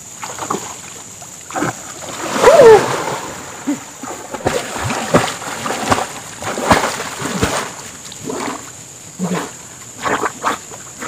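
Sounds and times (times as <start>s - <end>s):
person wading through river water: 0.0s - 11.0s.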